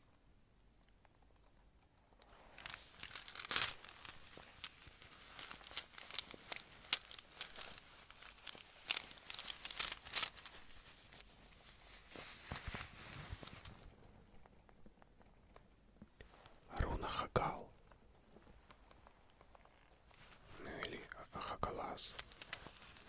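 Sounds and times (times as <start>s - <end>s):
plastic bag crinkling: 2.3s - 13.9s, 22.1s - 23.0s.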